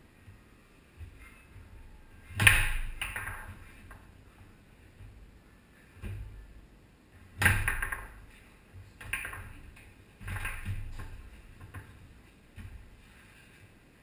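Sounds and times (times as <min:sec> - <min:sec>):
foosball ball knocks: 0:02.4 - 0:04.1, 0:07.4 - 0:08.2
foosball rods clacking: 0:02.4 - 0:04.2, 0:07.4 - 0:08.3, 0:09.0 - 0:12.0.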